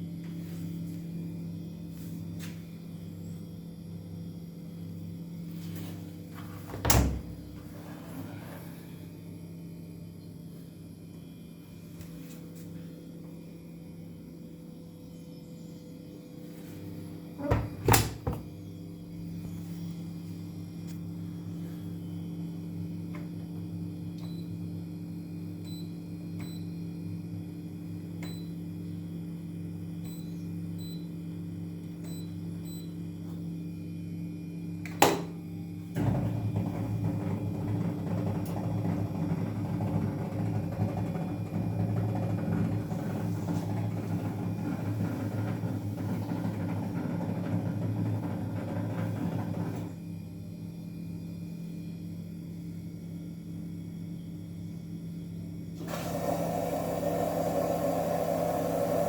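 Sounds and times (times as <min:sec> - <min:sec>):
drain pump humming and grinding: 0:00.0 - 0:25.0, 0:34.8 - 0:51.2, 0:55.6 - 0:59.0.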